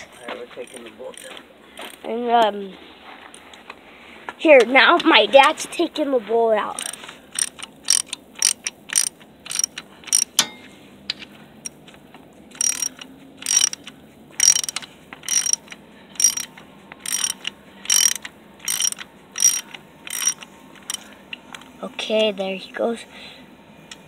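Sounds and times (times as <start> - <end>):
ratchet wrench clicking: 6.8 - 10.5, 12.5 - 21.0.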